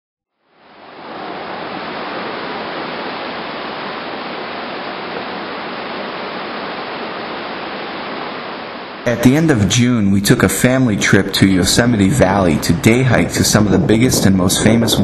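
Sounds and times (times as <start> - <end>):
waterfall rushing: 0.5 - 9.8.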